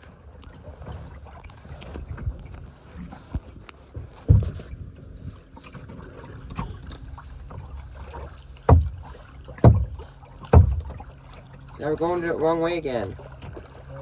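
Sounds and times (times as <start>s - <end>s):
water splashing against paddles: 0.0s - 14.0s
paddles knocking on boat: 4.0s - 4.7s, 8.1s - 13.7s.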